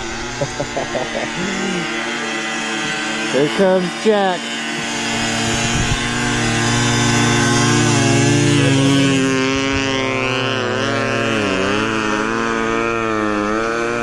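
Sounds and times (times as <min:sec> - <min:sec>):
two-stroke snow bike engine revving: 0:00.0 - 0:14.0.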